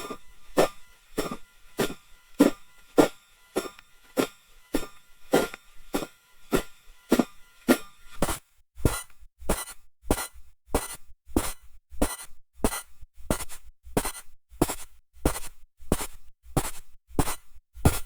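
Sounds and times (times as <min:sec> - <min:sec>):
footsteps crunching in snow: 0:00.0 - 0:18.0.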